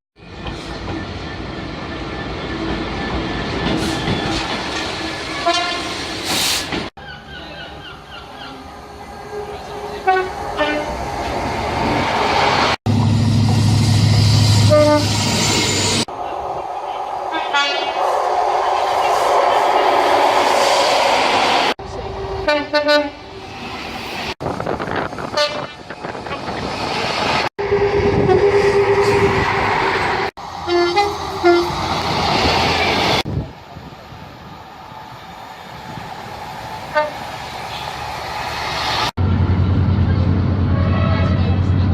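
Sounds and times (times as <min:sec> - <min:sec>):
train rumble: 0:00.2 - 0:41.9
train horn: 0:05.4 - 0:06.0, 0:09.3 - 0:11.0, 0:14.6 - 0:15.2, 0:17.4 - 0:18.0, 0:22.2 - 0:23.2, 0:25.3 - 0:25.8, 0:27.6 - 0:29.4, 0:30.6 - 0:31.8, 0:36.9 - 0:37.9, 0:40.7 - 0:41.7.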